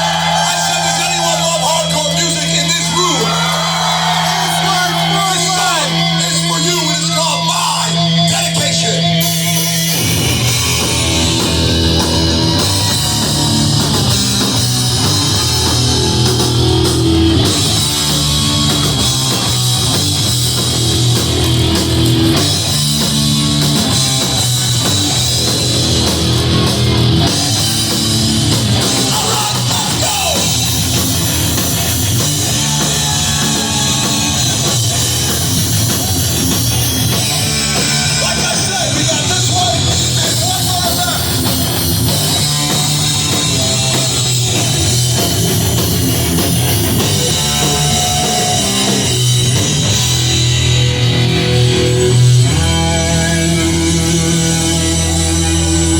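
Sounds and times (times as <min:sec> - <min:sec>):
shouted vocals: 0:00.0 - 0:09.0, 0:10.4 - 0:22.8, 0:27.2 - 0:49.9
punk band playing live: 0:00.0 - 0:55.9.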